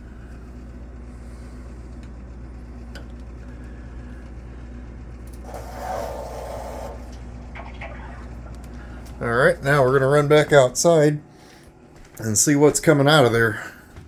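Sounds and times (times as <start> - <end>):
steady low hum: 0.0 - 14.0
water rushing through valve: 5.3 - 9.8.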